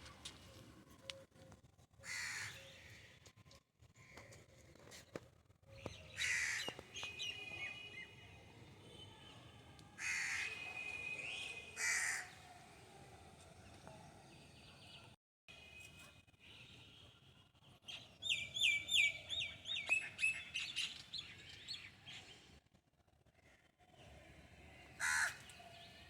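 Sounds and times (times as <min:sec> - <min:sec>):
crow cawing: 0:02.0 - 0:02.6, 0:10.0 - 0:10.5, 0:11.8 - 0:12.3, 0:25.0 - 0:25.4.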